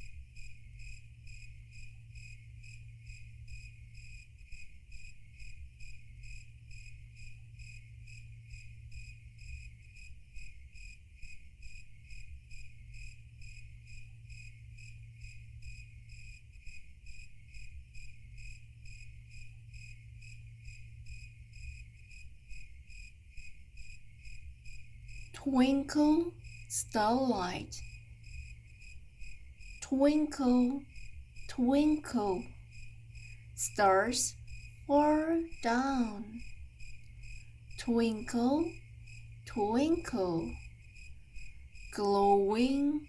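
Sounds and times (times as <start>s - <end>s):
crickets chirping: 0.0s - 43.0s
low steady hum: 24.4s - 43.0s.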